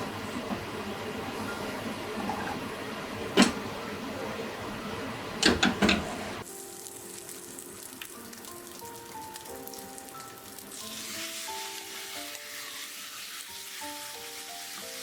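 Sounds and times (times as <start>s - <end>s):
soft music with held tones: 3.6s - 15.0s.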